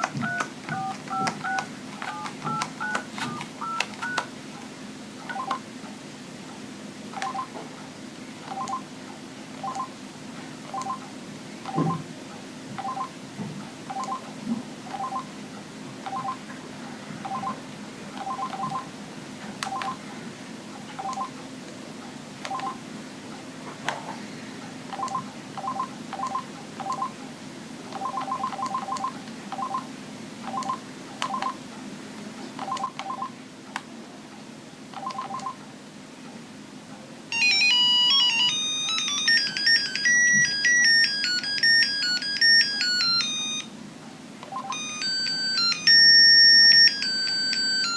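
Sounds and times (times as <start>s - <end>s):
electronic beeping ringtone melody: 0.0s - 4.2s, 37.3s - 43.7s, 44.6s - 47.9s
phone key beeps: 0.0s - 4.3s, 5.3s - 5.6s, 7.2s - 7.5s, 13.9s - 14.2s, 18.2s - 18.9s, 19.7s - 20.0s, 21.0s - 21.3s, 35.0s - 35.6s, 37.4s - 43.7s, 44.5s - 47.9s.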